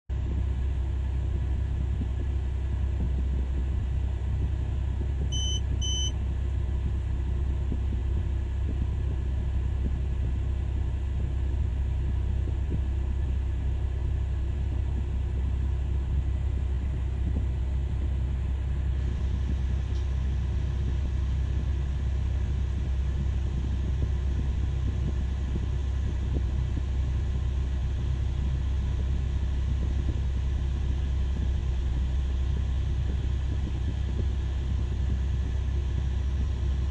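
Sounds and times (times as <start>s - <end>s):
diesel engine rumbling: 0.1s - 36.9s
short high beeps: 5.3s - 6.1s.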